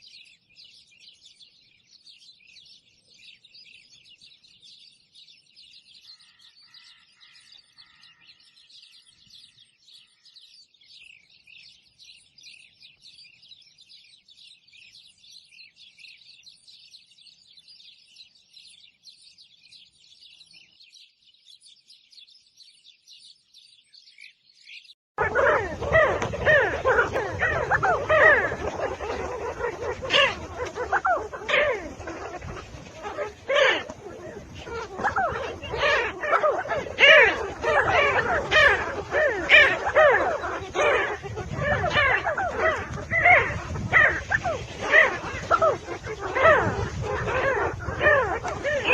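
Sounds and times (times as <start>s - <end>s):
small birds twittering: 0.0s - 48.9s
loud lower-pitched voices: 25.2s - 48.9s.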